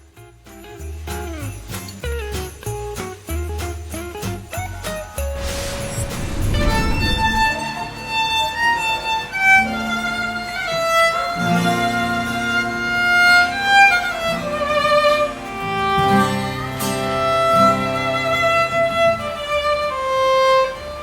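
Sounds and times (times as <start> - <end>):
low accompaniment: 5.2 - 7.8.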